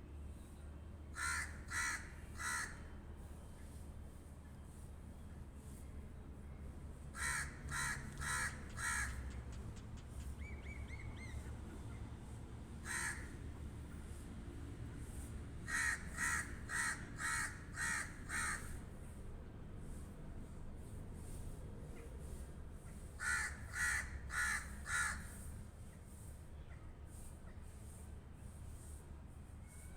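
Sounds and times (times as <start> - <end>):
crow cawing: 1.1 - 2.9, 7.2 - 9.4, 12.8 - 13.4, 15.7 - 18.7, 23.2 - 25.3.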